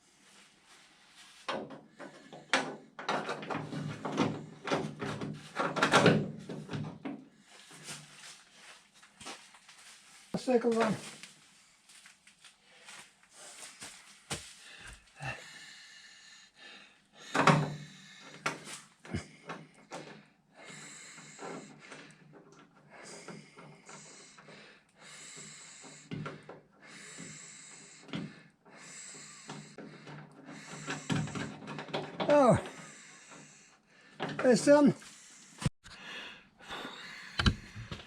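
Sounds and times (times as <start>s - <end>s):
knocks and clicks on vehicle parts: 37.4s - 38.0s.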